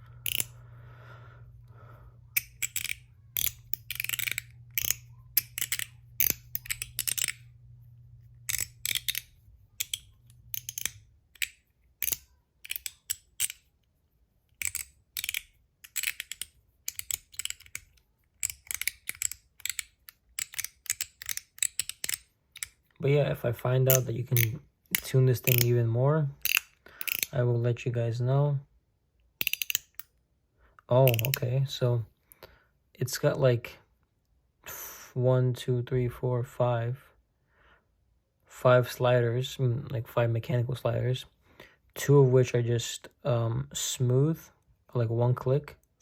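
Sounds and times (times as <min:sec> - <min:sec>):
faint low hum: 0:00.0 - 0:20.8
metal slider clicks: 0:00.2 - 0:00.6, 0:02.3 - 0:07.5, 0:08.4 - 0:13.6, 0:14.6 - 0:22.8, 0:23.9 - 0:25.7, 0:26.4 - 0:27.3, 0:29.4 - 0:30.1, 0:31.1 - 0:31.4.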